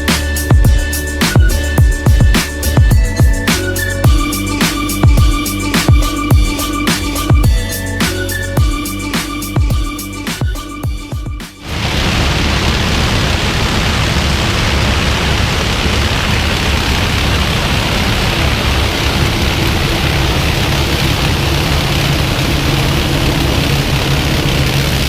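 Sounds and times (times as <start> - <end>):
music: 0.0 - 11.7.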